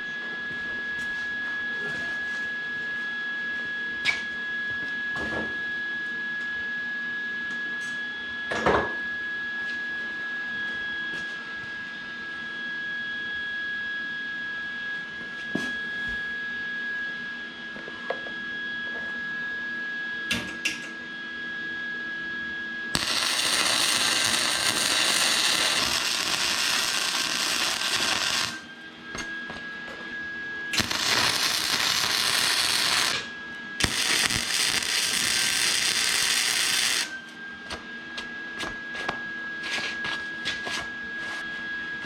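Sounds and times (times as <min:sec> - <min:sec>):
electric welder buzzing crackle: 0:23.0 - 0:28.7, 0:30.8 - 0:37.2.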